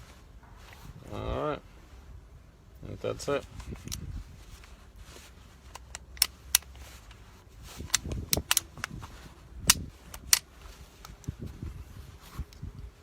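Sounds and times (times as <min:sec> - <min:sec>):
pistol metallic clicks and snaps: 0:05.7 - 0:06.8, 0:07.8 - 0:09.0, 0:09.6 - 0:11.3.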